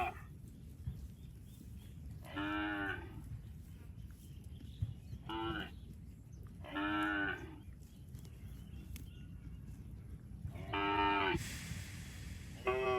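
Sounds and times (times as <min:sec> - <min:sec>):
cattle mooing: 0:10.6 - 0:11.4
hiss: 0:11.4 - 0:12.9.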